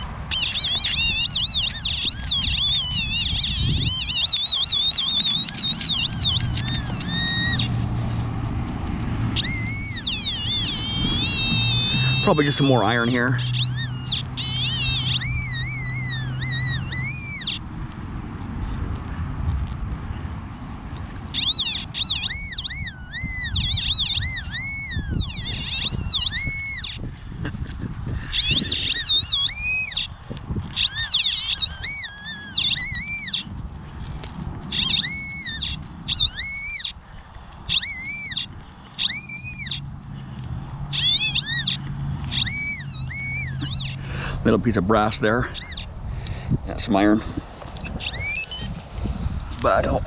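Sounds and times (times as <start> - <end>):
metal detector warbling tone: 0.0 - 7.8, 9.3 - 17.6, 21.3 - 27.0, 28.2 - 33.5, 34.7 - 37.0, 37.7 - 39.9, 40.9 - 44.0, 45.1 - 45.9, 47.8 - 48.8
low rumbling handling noise: 0.0 - 16.3.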